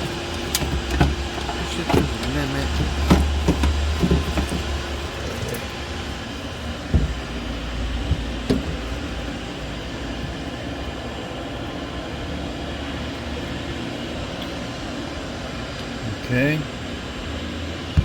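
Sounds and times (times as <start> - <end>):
tools knocking: 0.0 - 5.7, 6.8 - 10.4
steady rumbling background noise: 0.0 - 18.0.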